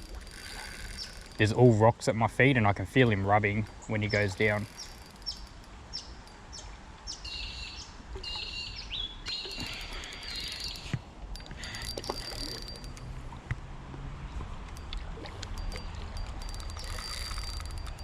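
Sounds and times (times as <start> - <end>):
small birds chirping: 0.7 - 1.3, 3.7 - 12.0.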